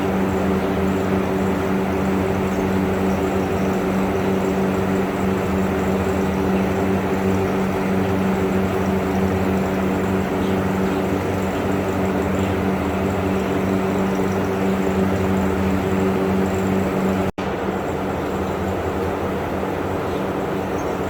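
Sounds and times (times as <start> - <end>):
machine hum: 0.0 - 21.0.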